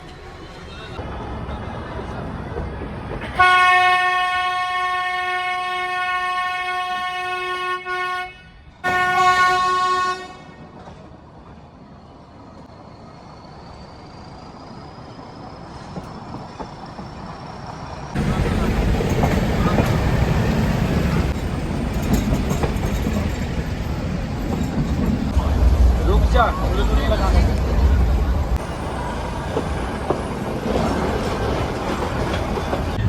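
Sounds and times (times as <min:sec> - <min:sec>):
train running along track: 0:00.0 - 0:33.0
train horn blasts: 0:03.3 - 0:10.7.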